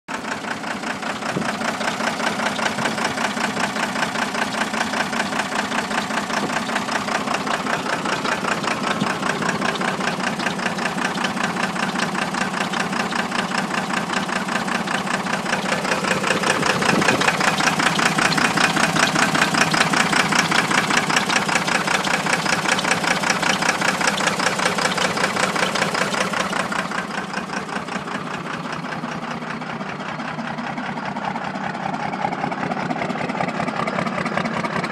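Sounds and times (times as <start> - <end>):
diesel engine knocking unevenly: 0.1 - 34.9.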